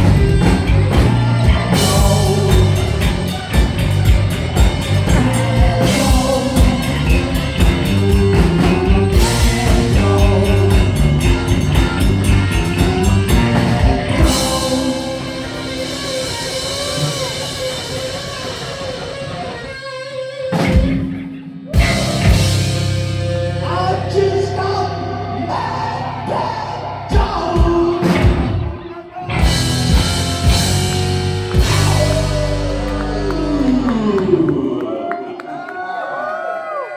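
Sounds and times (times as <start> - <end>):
pounding drums: 0.0 - 18.3, 29.4 - 34.1
heavy metal band playing live: 0.0 - 35.2.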